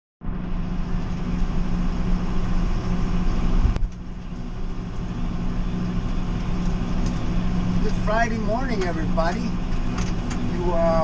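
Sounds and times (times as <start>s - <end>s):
tractor engine running: 0.2s - 11.0s.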